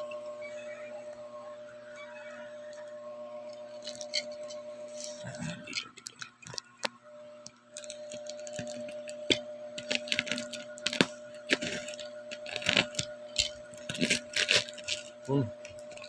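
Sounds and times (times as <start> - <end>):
faint hum: 0.0 - 16.0
parcel wrapping crackling: 3.5 - 6.9, 7.6 - 16.0.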